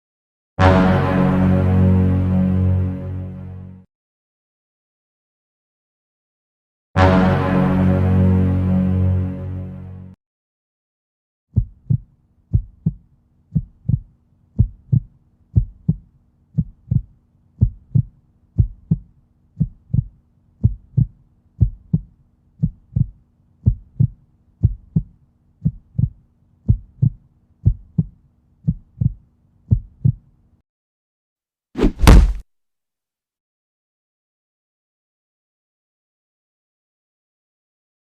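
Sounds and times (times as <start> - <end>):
heartbeat thumps: 11.6 - 30.2, 31.9 - 32.4.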